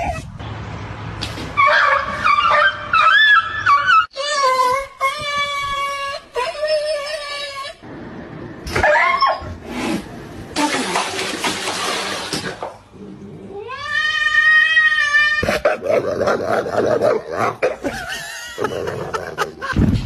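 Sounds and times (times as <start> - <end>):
cat yowling: 13.5 - 15.6.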